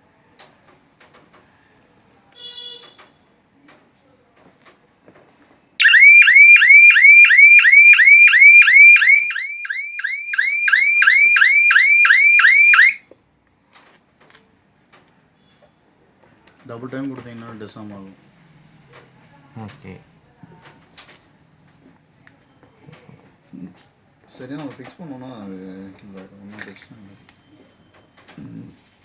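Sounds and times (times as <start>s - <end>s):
alarm siren whooping: 5.8s - 13.1s
short electronic beep: 16.4s - 19.0s.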